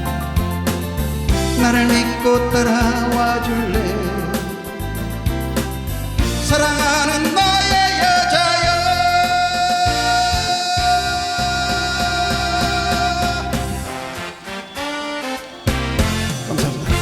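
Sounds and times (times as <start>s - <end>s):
guitar accompaniment: 0.0s - 17.0s.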